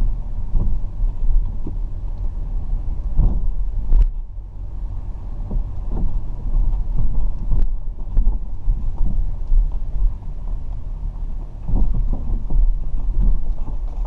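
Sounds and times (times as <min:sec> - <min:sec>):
irregular thumps: 0:00.0 - 0:02.4, 0:03.0 - 0:04.3, 0:05.4 - 0:14.0
car driving through water: 0:00.0 - 0:14.0.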